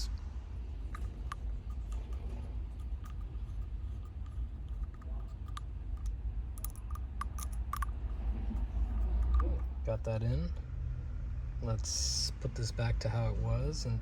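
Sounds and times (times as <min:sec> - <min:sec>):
low steady rumble: 0:00.0 - 0:14.0.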